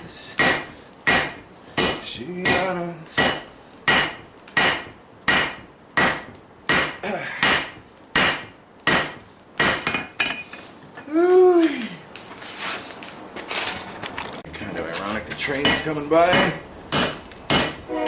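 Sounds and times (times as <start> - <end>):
hammer striking steel on anvil: 0.4 - 10.4, 15.6 - 18.0.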